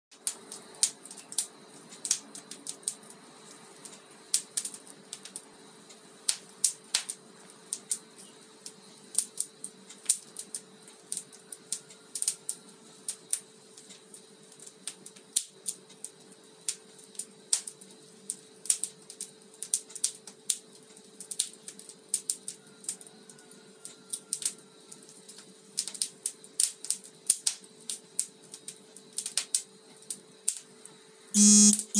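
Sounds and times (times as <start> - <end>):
wood fire crackling: 0.1 - 31.0
faint steady hum: 27.8 - 31.9.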